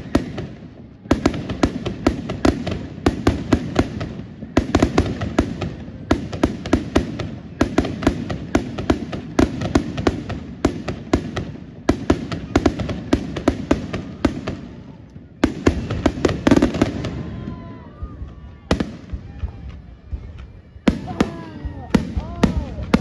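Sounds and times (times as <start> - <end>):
fireworks crackling and popping: 0.0 - 23.0.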